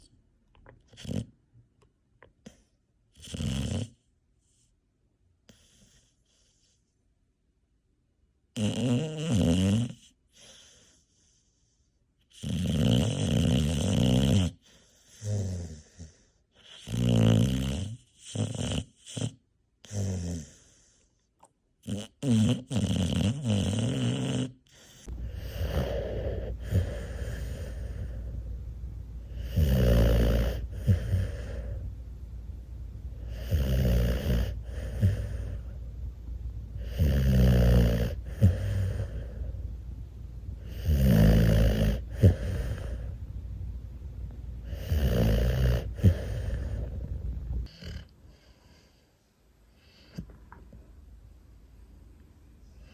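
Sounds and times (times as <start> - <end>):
puppy snoring: 0.9 - 1.4, 2.4 - 4.6, 5.5 - 6.8, 8.5 - 11.4, 12.3 - 21.0, 21.8 - 28.5, 29.2 - 31.9, 33.2 - 35.8, 36.7 - 39.6, 40.6 - 43.2, 44.6 - 49.0
steady low hum: 24.7 - 52.9.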